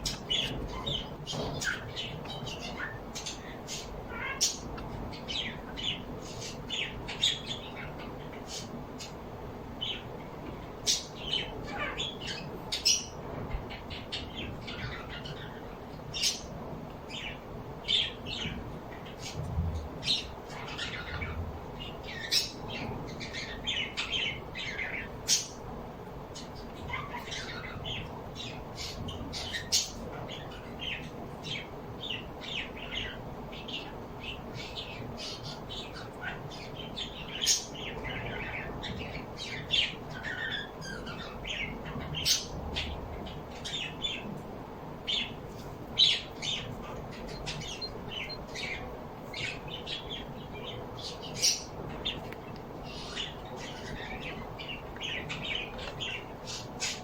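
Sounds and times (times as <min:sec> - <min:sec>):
flock of birds chirping and squawking: 0:00.0 - 0:09.2, 0:10.7 - 0:25.6, 0:26.4 - 0:44.3, 0:45.1 - 0:57.0.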